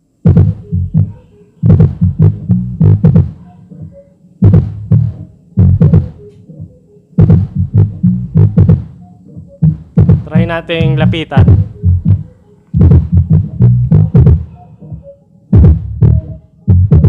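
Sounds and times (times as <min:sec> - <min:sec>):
faint melody notes: 0:00.0 - 0:17.0
deep bass thuds: 0:00.2 - 0:01.1, 0:01.7 - 0:03.4, 0:04.4 - 0:06.1, 0:07.2 - 0:08.9, 0:09.6 - 0:14.5, 0:15.6 - 0:17.0.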